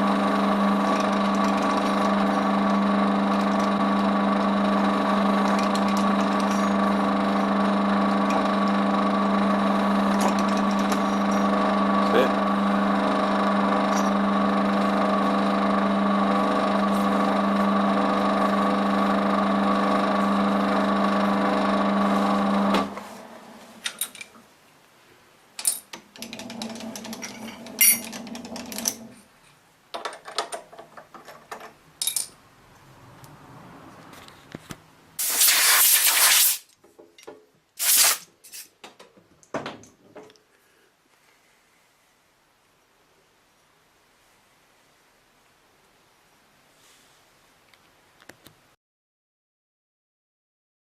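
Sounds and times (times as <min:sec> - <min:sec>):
machine motor humming: 0:00.0 - 0:23.8
metal clicks and knocks: 0:29.9 - 0:32.4
loud hissing burst: 0:35.2 - 0:36.7, 0:37.8 - 0:38.3.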